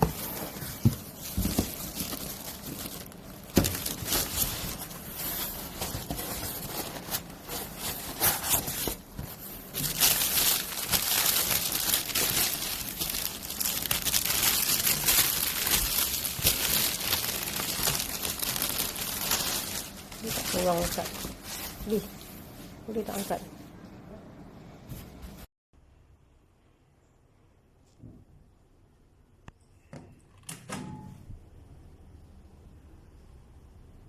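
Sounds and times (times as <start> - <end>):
plastic packaging crinkling: 0.0 - 22.2.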